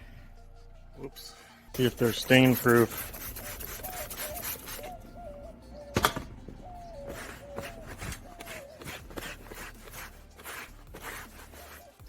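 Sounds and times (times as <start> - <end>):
hand rubbing vehicle body: 1.8 - 5.3, 6.0 - 12.0.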